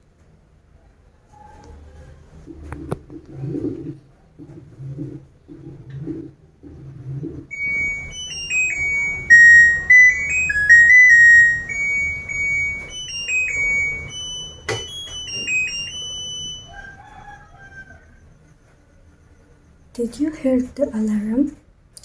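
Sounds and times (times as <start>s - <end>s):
beeping alarm melody: 4.7s - 19.9s.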